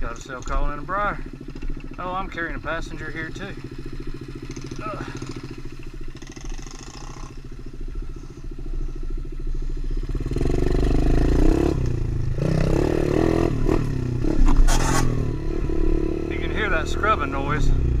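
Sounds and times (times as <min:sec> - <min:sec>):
motorbike engine revving: 0:00.0 - 0:18.0.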